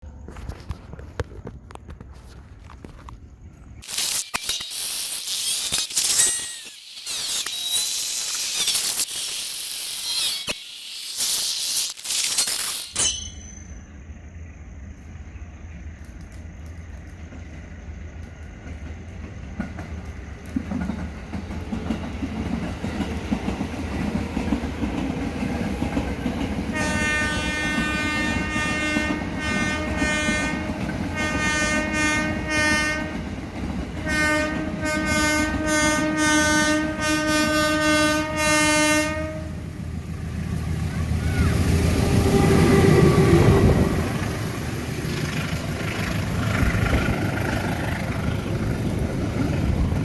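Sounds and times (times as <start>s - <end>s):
train passing: 13.7s - 50.0s
train horn blasts: 26.7s - 33.3s, 34.0s - 39.8s, 41.9s - 43.9s.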